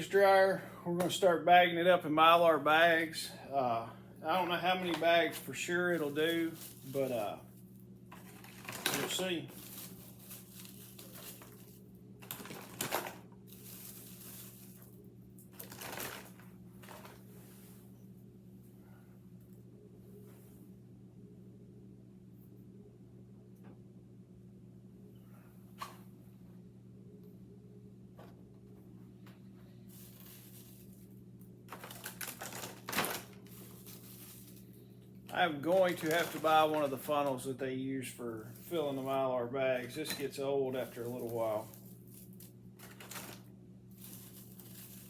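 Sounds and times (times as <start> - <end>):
steady low hum: 0.0 - 45.0
crinkling plastic bags: 4.5 - 17.3, 29.9 - 45.0
dry food pieces clattering: 4.8 - 7.4, 8.1 - 14.9, 15.5 - 17.2, 31.7 - 34.8, 35.6 - 37.4, 39.8 - 45.0.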